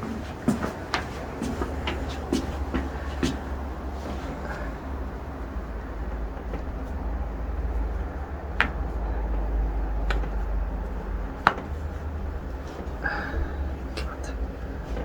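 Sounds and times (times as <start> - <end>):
steady low hum: 0.0 - 15.0
joints cracking: 6.0 - 15.0.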